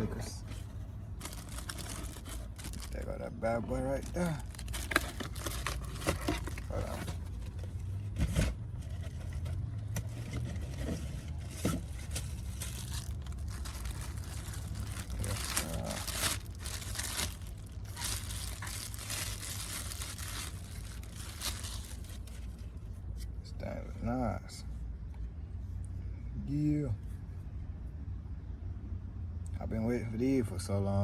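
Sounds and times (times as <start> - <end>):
packaging torn open: 4.4 - 7.2, 12.1 - 22.5.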